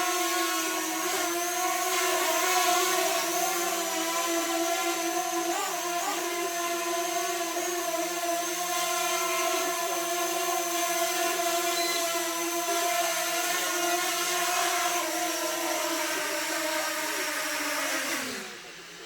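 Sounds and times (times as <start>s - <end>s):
drone propellers buzzing: 0.0s - 19.0s.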